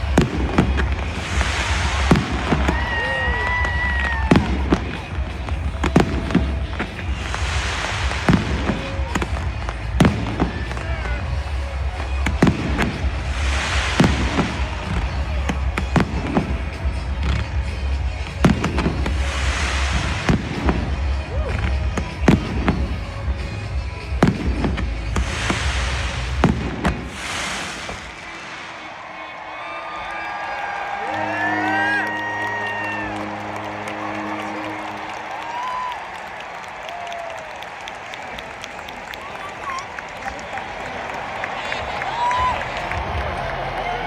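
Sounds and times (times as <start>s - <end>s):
music playing: 0.0s - 28.2s, 30.1s - 38.9s, 40.2s - 44.0s
fireworks bangs and booms: 0.0s - 29.4s
hissing crackle of fireworks: 0.0s - 31.9s.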